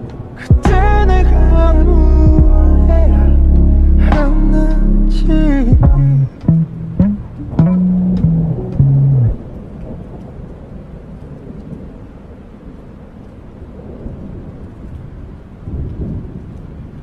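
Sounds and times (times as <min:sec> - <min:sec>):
steady rain: 0:00.0 - 0:05.1, 0:06.3 - 0:17.0
thunder rumbling: 0:00.0 - 0:12.8
bass notes of music: 0:00.5 - 0:09.4.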